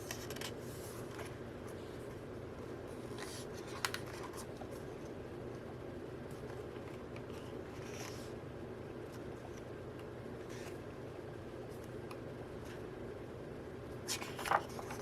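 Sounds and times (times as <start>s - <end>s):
book pages rustling and turning: 0.0s - 1.8s, 3.0s - 5.2s, 6.3s - 8.4s, 10.4s - 10.9s, 14.1s - 15.0s
low room hum: 0.0s - 15.0s.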